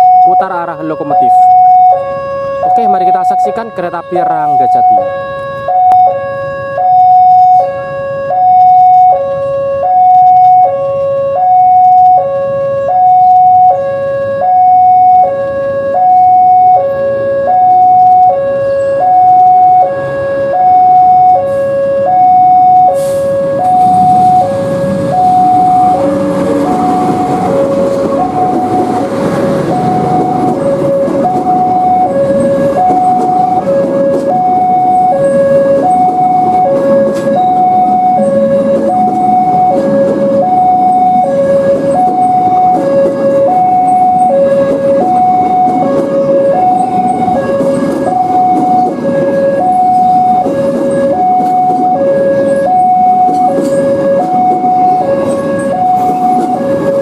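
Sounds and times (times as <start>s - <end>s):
two-tone electronic warning bell: 0.0s - 57.0s
train rumble: 22.5s - 57.0s.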